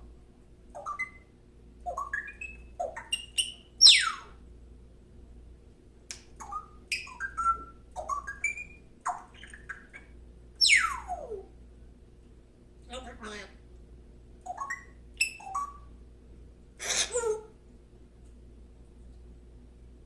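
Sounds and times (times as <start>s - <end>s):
bird chirping: 0.7s - 4.4s, 6.4s - 11.5s, 14.4s - 16.0s.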